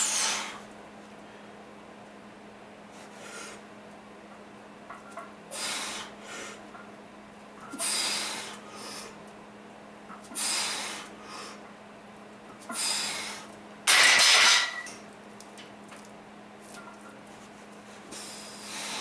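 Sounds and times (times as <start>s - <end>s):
person breathing hard: 5.5s - 6.6s, 18.1s - 19.0s.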